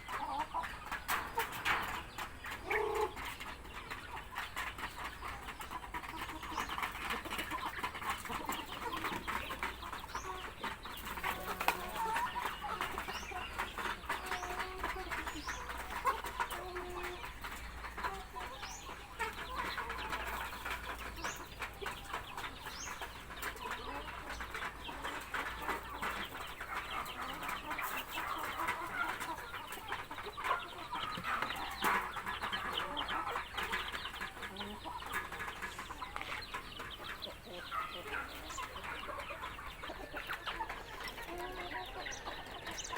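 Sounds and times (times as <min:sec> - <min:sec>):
chickens clucking: 0:00.0 - 0:42.9.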